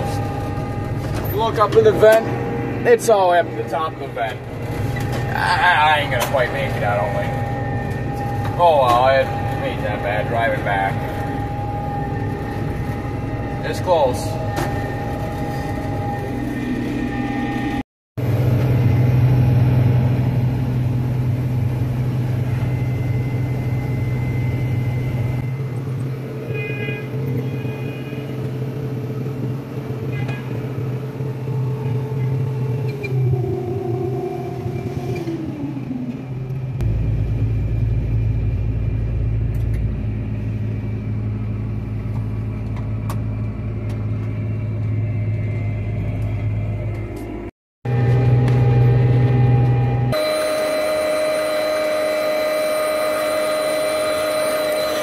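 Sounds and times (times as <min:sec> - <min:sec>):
combine harvester droning: 0:00.0 - 0:55.0
tone sliding down in pitch: 0:50.0 - 0:55.0.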